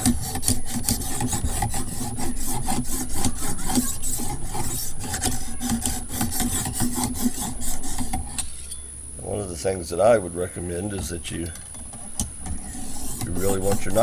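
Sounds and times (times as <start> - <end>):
sharpening stone on knife blade: 0.2 - 8.8, 12.6 - 14.0.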